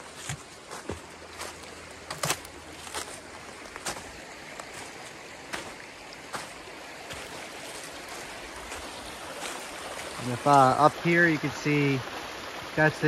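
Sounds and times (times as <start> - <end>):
footsteps on ground: 0.0 - 10.3
stream flowing: 0.0 - 13.0.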